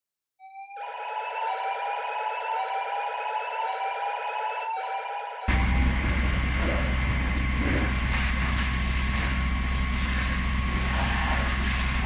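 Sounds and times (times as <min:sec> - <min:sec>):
low mechanical rumble: 0:05.5 - 0:12.0.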